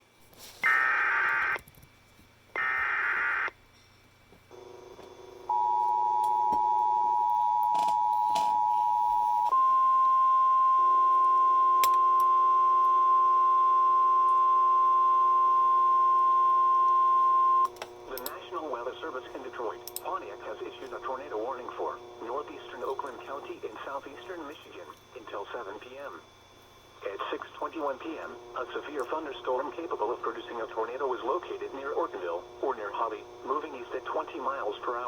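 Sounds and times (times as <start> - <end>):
buzzy data bursts: 0.6 - 1.6, 2.6 - 3.5
steady warning tone: 0.6 - 1.6, 2.6 - 3.5, 4.5 - 35.0.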